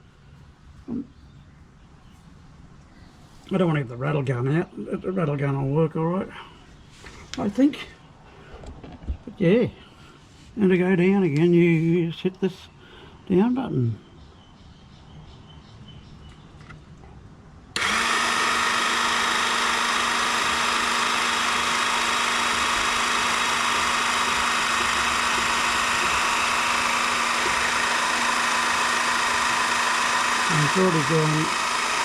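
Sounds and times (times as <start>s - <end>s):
electric car jack motor humming: 17.8s - 32.0s.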